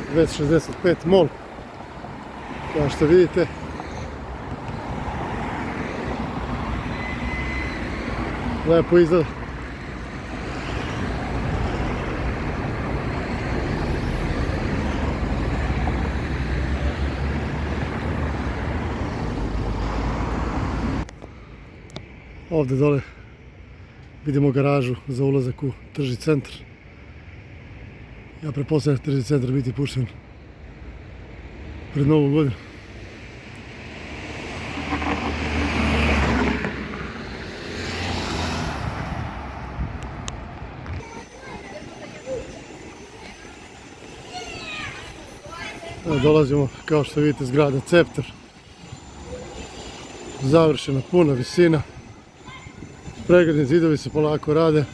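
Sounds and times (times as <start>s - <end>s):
road traffic rumble: 0.0s - 54.9s
car passing by: 1.8s - 21.1s, 32.5s - 41.0s.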